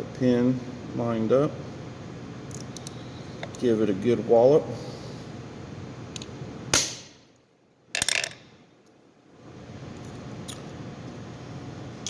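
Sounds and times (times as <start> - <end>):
hammer striking metal punch: 6.8 - 7.2.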